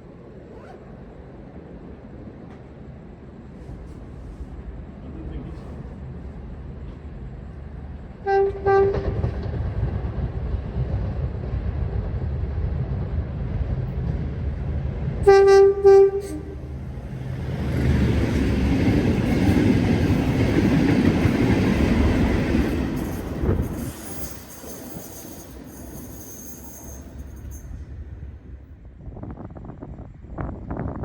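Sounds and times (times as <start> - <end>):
train wheels on rails: 0.1 - 31.0
train horn blasts: 8.2 - 9.2, 15.2 - 16.7.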